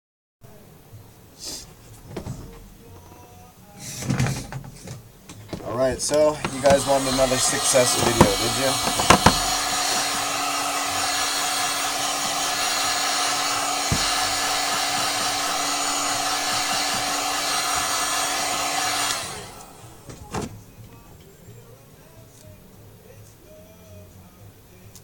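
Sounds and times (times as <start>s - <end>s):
hot-air blower humming: 0.5s - 23.7s
sharp knock: 7.9s - 10.3s, 13.6s - 18.7s.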